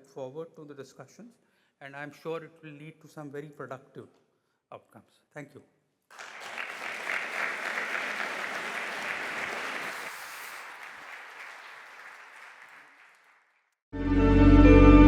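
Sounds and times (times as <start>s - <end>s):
audience applauding: 6.1s - 13.8s.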